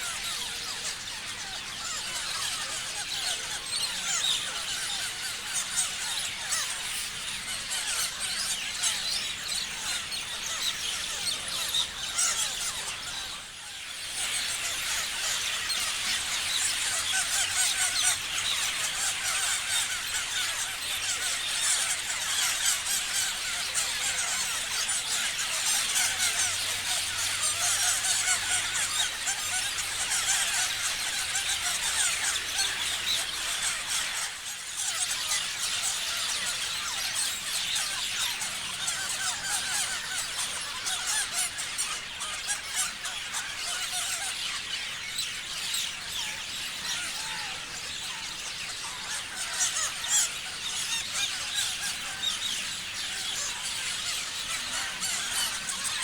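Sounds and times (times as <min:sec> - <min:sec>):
parrots chirping and squealing: 0:00.0 - 0:56.0.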